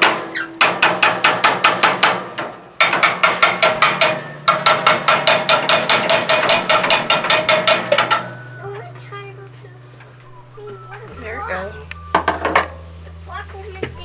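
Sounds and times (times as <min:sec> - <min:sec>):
rapid metallic tapping: 0:00.0 - 0:09.2.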